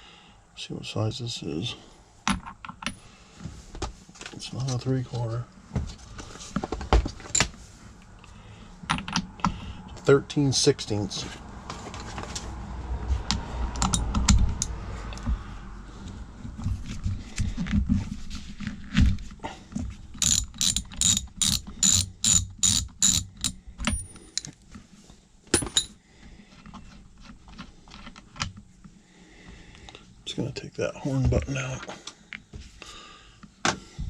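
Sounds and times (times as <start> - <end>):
socket ratchet clicking: 13.7 - 14.8, 20.2 - 24.5.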